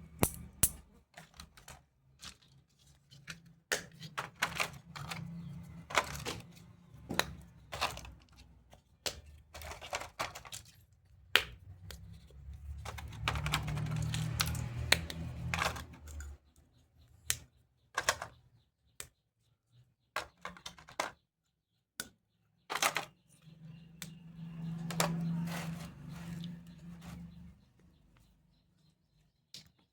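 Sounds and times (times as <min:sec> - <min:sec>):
plastic toy pieces clicking: 0:03.7 - 0:06.5, 0:09.0 - 0:10.7, 0:12.7 - 0:16.4, 0:17.3 - 0:18.3, 0:22.0 - 0:23.2
rubbing and rustling: 0:24.8 - 0:27.7.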